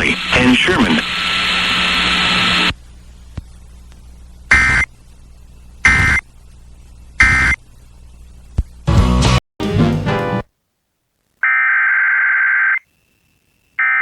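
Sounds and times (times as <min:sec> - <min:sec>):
buzzy data bursts: 0:04.5 - 0:04.9, 0:05.8 - 0:06.3, 0:07.1 - 0:07.6.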